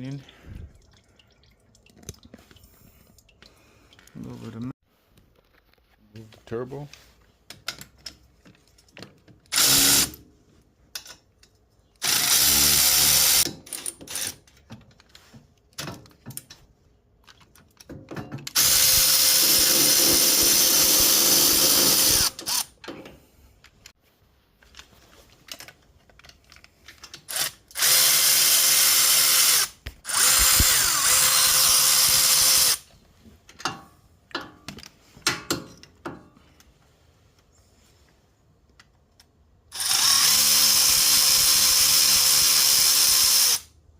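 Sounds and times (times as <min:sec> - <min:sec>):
tool handling clicks and knocks: 0:07.2 - 0:09.5, 0:10.9 - 0:12.0, 0:13.4 - 0:18.6, 0:22.4 - 0:24.0, 0:24.6 - 0:27.8, 0:32.9 - 0:37.5, 0:38.6 - 0:39.6
power drill-driver running: 0:09.5 - 0:10.2, 0:12.0 - 0:13.4, 0:18.6 - 0:22.7, 0:27.3 - 0:32.8, 0:39.7 - 0:43.7.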